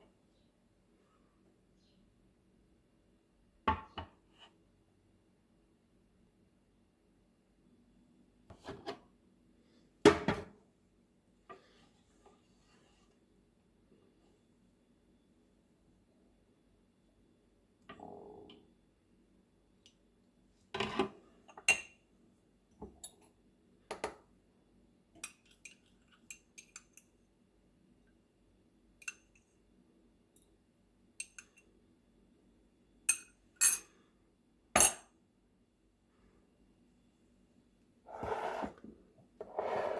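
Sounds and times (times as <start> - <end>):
kitchen items knocking and scraping: 10.1 - 10.5, 38.1 - 39.9.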